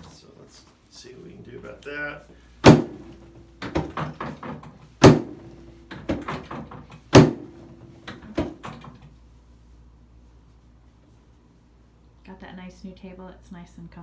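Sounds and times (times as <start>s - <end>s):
small knocks: 2.7s - 9.1s.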